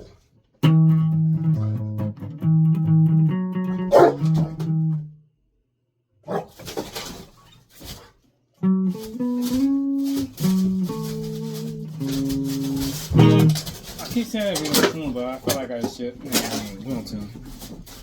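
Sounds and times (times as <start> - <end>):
plucked guitar notes: 0.6 - 5.2, 8.6 - 13.8
scratchy guitar strums: 0.6 - 5.2, 8.6 - 18.0.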